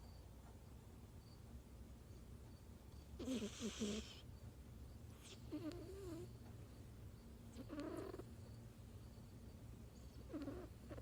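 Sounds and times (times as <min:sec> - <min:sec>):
kitten snoring: 0:03.2 - 0:04.2, 0:05.2 - 0:06.3, 0:07.5 - 0:08.3, 0:10.2 - 0:11.0.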